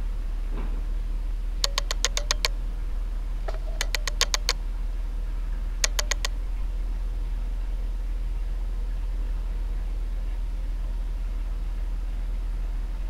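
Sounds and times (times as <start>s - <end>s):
sharp clicks: 1.6s - 2.5s, 3.5s - 4.6s, 5.8s - 6.4s.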